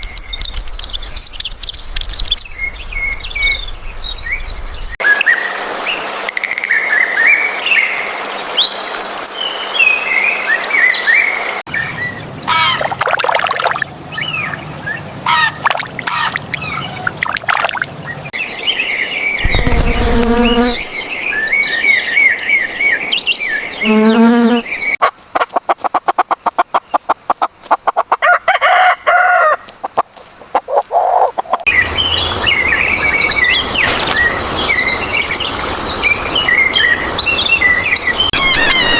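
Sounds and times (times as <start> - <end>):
birds chirping and twittering: 0.0 - 27.6, 29.8 - 38.9
fast bird clicks: 6.3 - 6.8.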